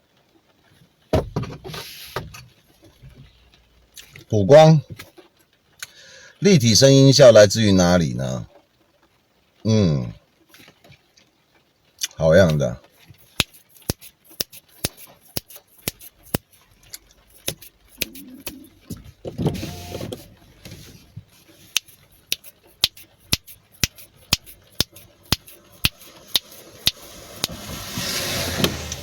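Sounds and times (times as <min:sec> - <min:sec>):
sharp clicks: 0:21.7 - 0:27.6.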